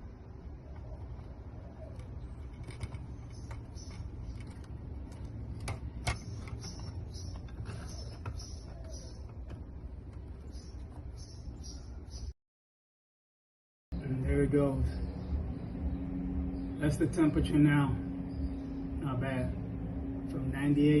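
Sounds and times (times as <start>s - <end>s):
steady low hum: 0.0s - 12.4s, 13.9s - 21.0s
small parts clicking and tapping: 1.9s - 11.0s.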